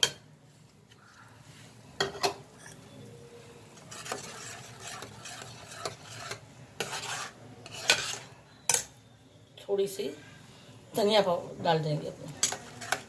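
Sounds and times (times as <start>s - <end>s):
spoon scraping pan: 3.7s - 8.9s, 12.3s - 13.0s.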